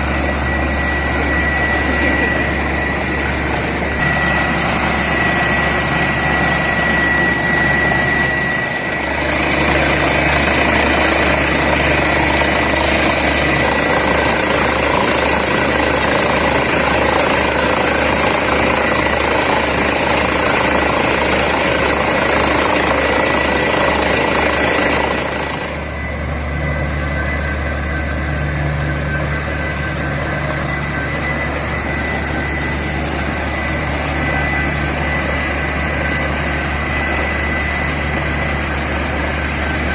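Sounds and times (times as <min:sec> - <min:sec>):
deep engine hum: 0:00.0 - 0:39.9
drilling rig and air compressor: 0:00.0 - 0:39.9.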